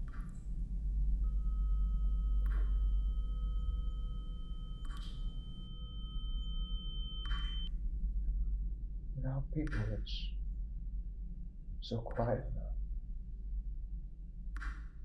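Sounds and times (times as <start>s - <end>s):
low rumbling drone: 0.0s - 15.0s
steady electronic tones: 1.1s - 7.7s.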